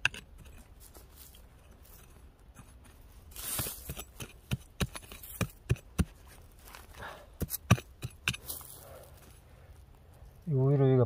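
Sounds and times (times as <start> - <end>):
digging tool scraping soil: 0.0 - 8.7
digging tool striking soil: 1.9 - 6.5, 7.3 - 8.6.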